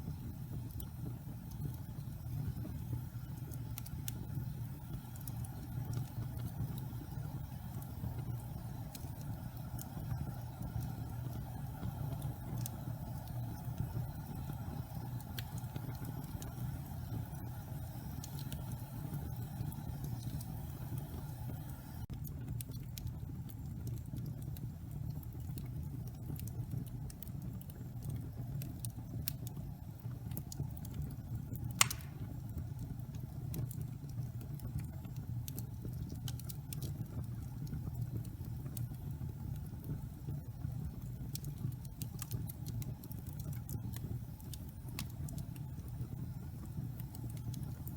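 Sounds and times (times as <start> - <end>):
wood fire crackling: 0.0 - 47.9
loud pop of fire: 31.8 - 32.4.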